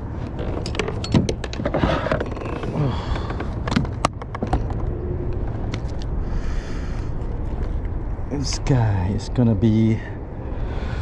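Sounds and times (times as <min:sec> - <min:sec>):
clicks and knocks on kayak: 0:03.1 - 0:04.9.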